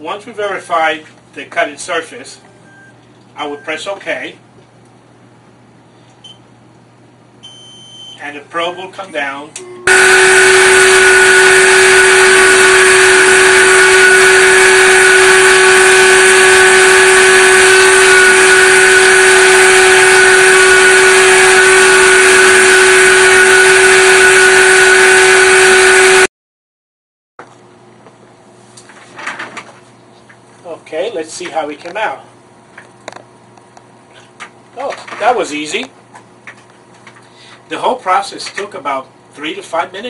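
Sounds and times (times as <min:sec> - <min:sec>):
cnc machine whining: 0:09.6 - 0:26.3.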